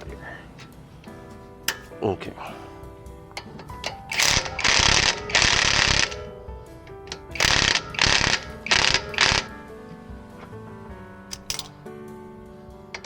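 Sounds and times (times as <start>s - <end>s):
ratchet wrench clicking: 3.7s - 6.2s, 7.1s - 9.4s, 11.3s - 11.7s.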